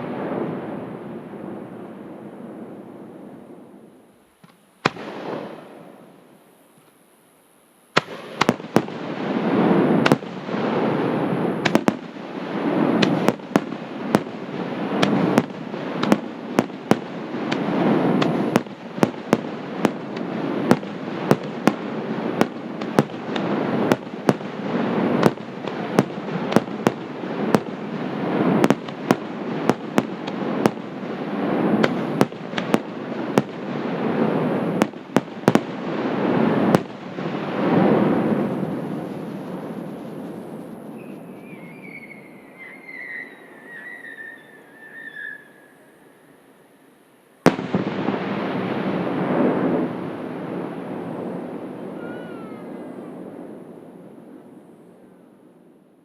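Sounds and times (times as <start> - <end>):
crackling rumble of fireworks: 0.0 - 45.3, 47.4 - 56.0
firework bangs: 4.4 - 6.1, 7.9 - 42.2, 47.4 - 52.6.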